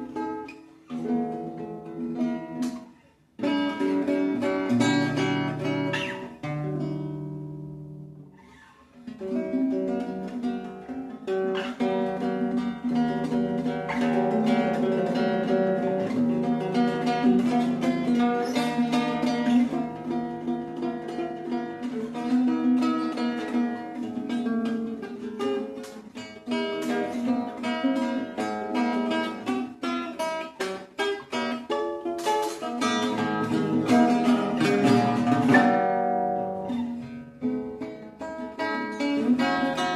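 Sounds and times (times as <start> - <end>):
acoustic guitar playing: 0.0 - 39.9.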